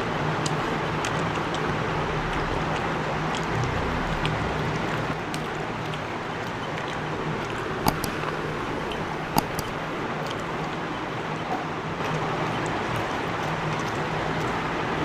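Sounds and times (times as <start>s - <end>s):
low hum: 1.5s - 10.6s
sharp clicks: 7.8s - 10.4s.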